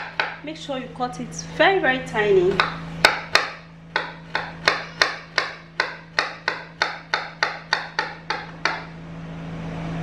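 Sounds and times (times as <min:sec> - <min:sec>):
knife chopping on a board: 0:00.0 - 0:00.4, 0:02.5 - 0:08.9.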